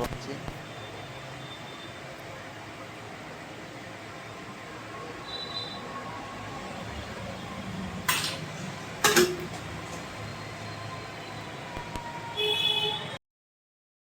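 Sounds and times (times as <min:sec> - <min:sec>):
hot air rework station hissing: 0:04.9 - 0:12.2.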